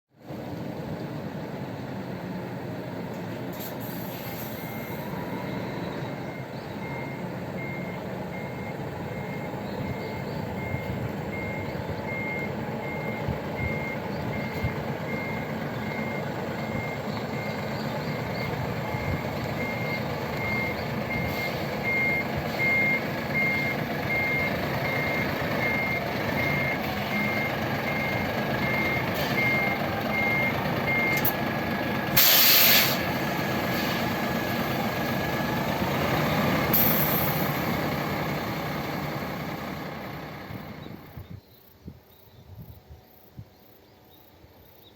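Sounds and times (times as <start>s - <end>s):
diesel engine running: 0.2s - 41.4s
air brakes hiss: 3.5s - 5.0s, 21.2s - 21.8s, 32.2s - 34.1s, 36.7s - 37.6s
reversing alarm beeps: 4.5s - 31.4s.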